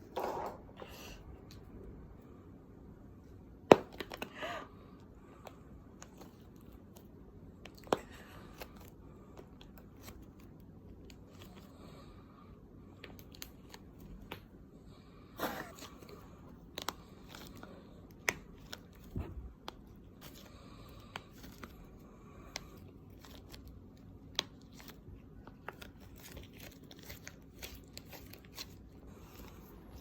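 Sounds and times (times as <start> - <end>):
packaging crinkling and rustling: 22.8 - 30.0.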